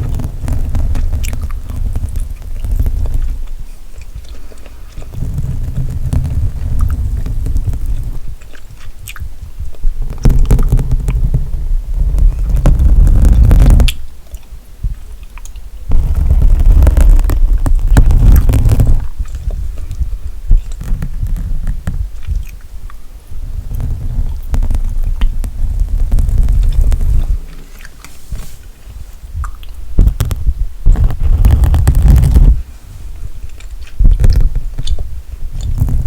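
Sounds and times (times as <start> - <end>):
loud low rumble: 0.0 - 3.8, 5.0 - 8.4, 9.4 - 14.0, 15.9 - 22.4, 23.3 - 27.5
mouth clicks: 0.0 - 14.6, 33.5 - 36.0
gum chewing: 0.0 - 23.0, 23.6 - 28.1, 29.4 - 32.6, 33.5 - 36.0.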